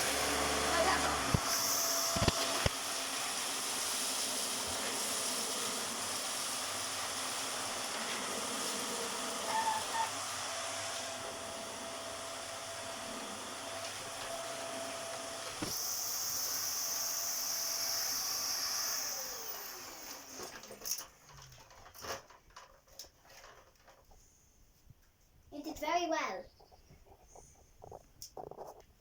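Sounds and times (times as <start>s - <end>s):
vacuum cleaner whine: 0.0s - 21.1s.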